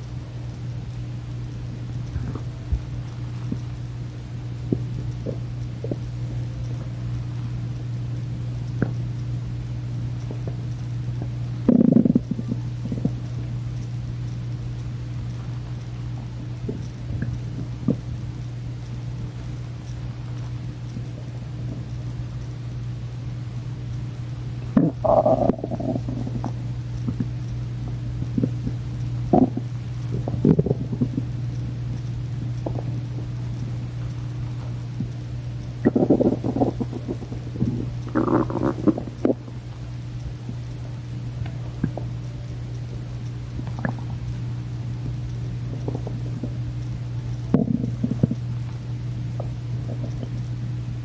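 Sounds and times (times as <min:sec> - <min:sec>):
steady low hum: 0:00.0 - 0:51.0
stomach growling: 0:02.1 - 0:03.8, 0:04.6 - 0:06.3, 0:10.2 - 0:13.4, 0:16.6 - 0:18.2, 0:24.6 - 0:27.4, 0:28.1 - 0:31.4, 0:32.4 - 0:33.4, 0:34.4 - 0:40.7, 0:41.4 - 0:42.2, 0:43.5 - 0:44.4, 0:45.0 - 0:46.8, 0:47.4 - 0:50.5.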